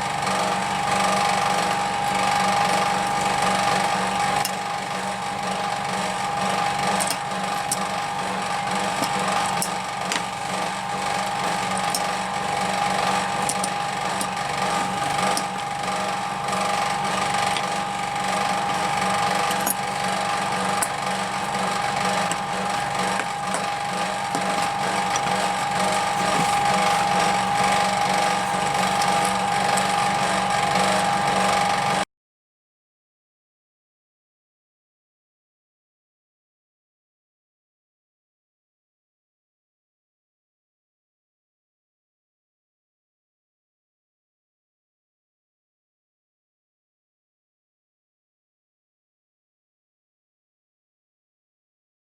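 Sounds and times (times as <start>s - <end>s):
power tool whining: 0.0s - 32.0s.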